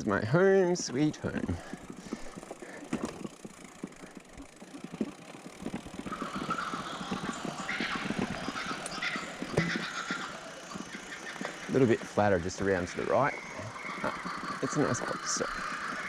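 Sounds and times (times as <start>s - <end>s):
bike tyres crunching on rough track: 0.0s - 16.0s.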